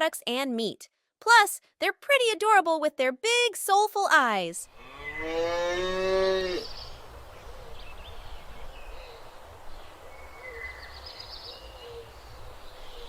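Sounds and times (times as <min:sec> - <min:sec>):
faint bird calls: 0:06.4 - 0:13.0.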